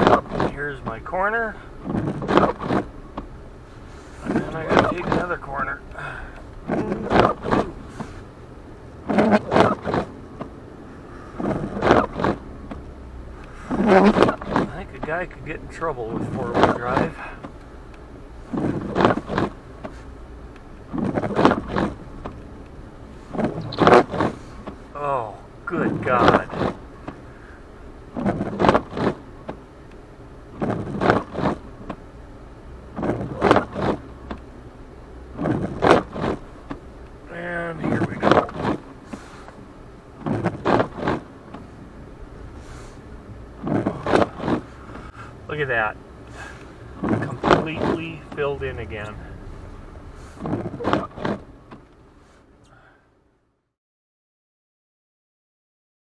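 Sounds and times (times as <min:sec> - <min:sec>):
car road rumble: 0:00.0 - 0:53.7
loud rumble bursts: 0:41.3 - 0:51.7.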